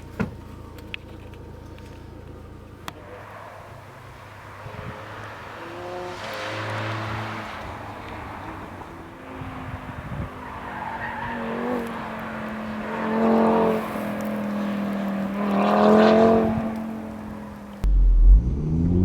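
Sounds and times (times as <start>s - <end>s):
car engine steady note: 0.0s - 11.2s, 11.8s - 19.0s
tyres squealing: 3.0s - 16.0s.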